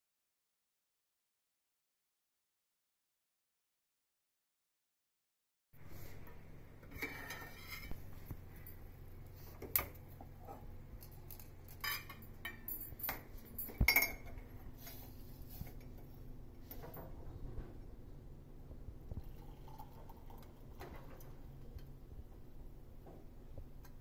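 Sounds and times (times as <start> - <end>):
low steady hum: 5.8 - 24.0
metal utensils clinking: 11.0 - 15.0.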